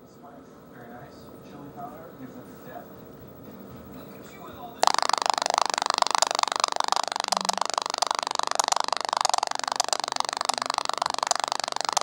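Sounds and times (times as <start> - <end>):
loudspeaker popping and crackling: 4.8 - 12.0.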